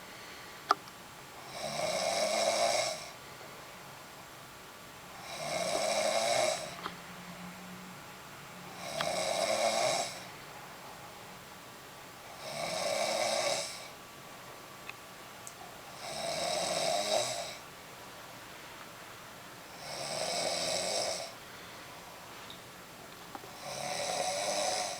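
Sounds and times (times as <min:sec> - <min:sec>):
person snoring: 0:01.4 - 0:03.2, 0:05.2 - 0:06.8, 0:08.7 - 0:10.3, 0:12.4 - 0:13.9, 0:16.0 - 0:17.6, 0:19.7 - 0:21.4, 0:23.6 - 0:24.9.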